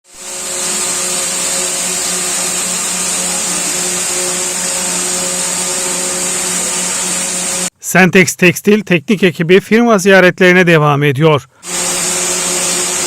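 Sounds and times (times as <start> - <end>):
knitting machine whirring: 0.1 - 7.7, 11.6 - 13.0.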